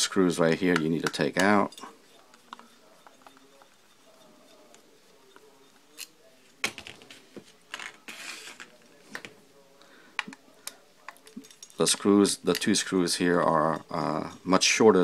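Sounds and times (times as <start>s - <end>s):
screwdriver scraping: 0.5s - 6.2s.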